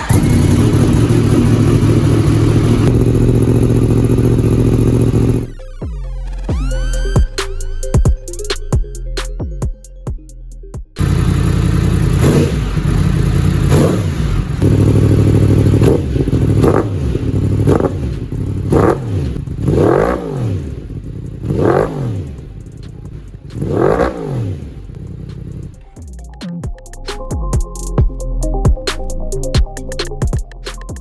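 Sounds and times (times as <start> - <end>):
motorcycle engine revving: 0.0 - 7.2, 11.0 - 26.0.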